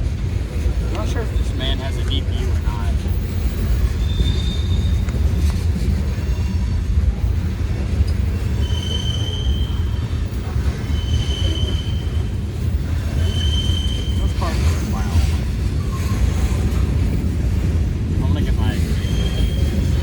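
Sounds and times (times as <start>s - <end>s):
freight train cars rumbling past: 0.0s - 20.0s
high-pitched wheel squeals: 3.7s - 5.4s, 8.3s - 14.5s, 18.9s - 20.0s.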